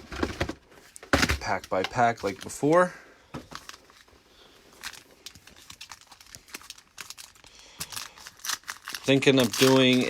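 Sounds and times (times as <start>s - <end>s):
foil wrapper crinkling and tearing: 1.4s - 2.9s, 3.5s - 4.1s, 4.7s - 10.0s.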